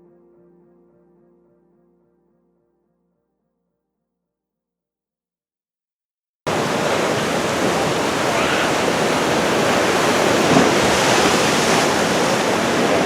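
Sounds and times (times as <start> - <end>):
heavy surf rushing: 6.5 - 13.0.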